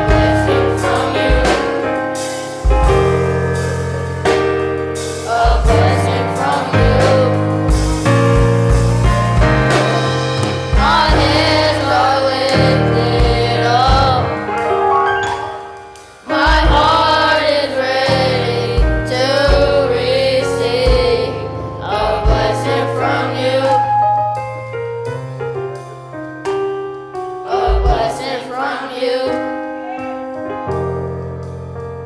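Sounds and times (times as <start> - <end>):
voices singing gospel melody: 0.0 - 4.0, 4.8 - 24.2, 27.4 - 30.8
band with bass and drums: 0.0 - 23.8.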